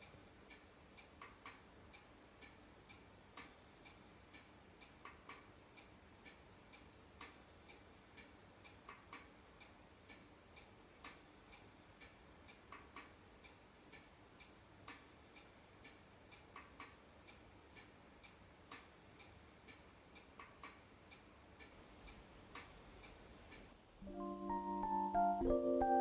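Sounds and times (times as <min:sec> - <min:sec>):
faint clock-like ticking: 0:00.0 - 0:25.3.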